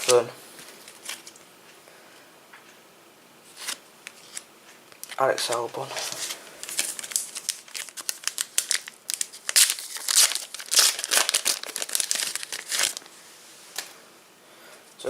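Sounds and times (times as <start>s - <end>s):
wrapper tearing and crinkling: 3.6s - 13.1s.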